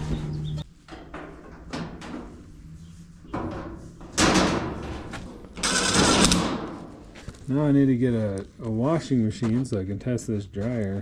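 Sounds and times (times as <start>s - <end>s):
knocks on metal panels: 3.4s - 6.8s
metal panel slamming: 4.1s - 6.7s.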